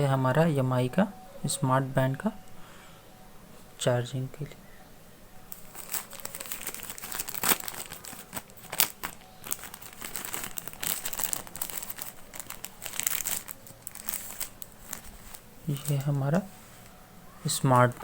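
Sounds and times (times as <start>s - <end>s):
packaging crinkling: 5.4s - 18.0s.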